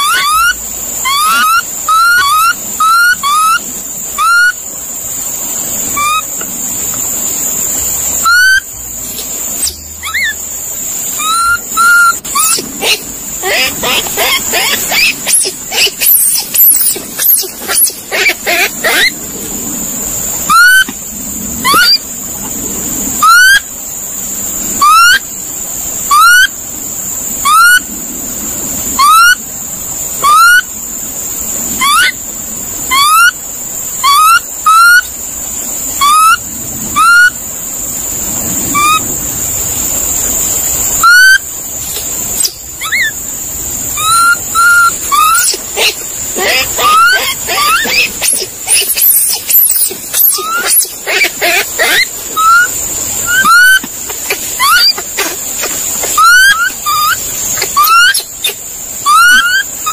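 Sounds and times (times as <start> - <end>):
monkey squeaky calls: 0.0 - 4.6, 5.9 - 6.4, 8.2 - 8.7, 9.6 - 10.4, 11.1 - 19.2, 20.5 - 20.9, 21.6 - 22.0, 23.2 - 23.6, 24.8 - 25.2, 26.1 - 26.5, 27.4 - 27.9, 29.0 - 29.4, 30.2 - 30.7, 31.8 - 32.2, 32.9 - 33.4, 34.0 - 35.1, 36.0 - 36.4, 37.0 - 37.4, 38.8 - 39.0, 41.0 - 43.2, 44.0 - 59.9
steady high-pitched hiss: 0.0 - 59.9.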